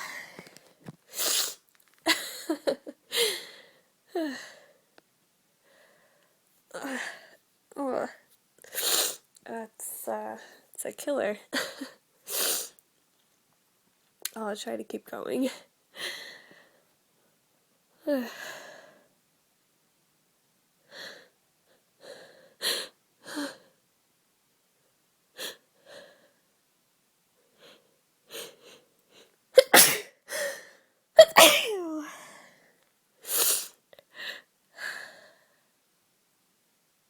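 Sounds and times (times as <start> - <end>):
woman sneezing: 29.6 - 30.1, 31.2 - 32.1.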